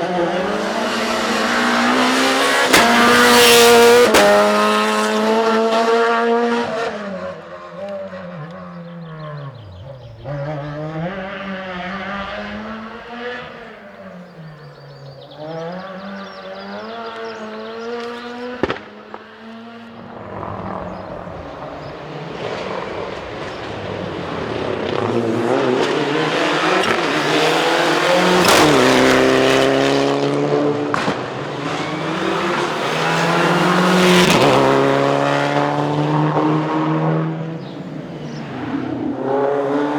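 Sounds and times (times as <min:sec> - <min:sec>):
rally car engines revving: 0:00.0 - 0:39.9
sharp crack: 0:01.6 - 0:04.8, 0:18.5 - 0:19.6, 0:26.7 - 0:29.3, 0:30.8 - 0:34.8.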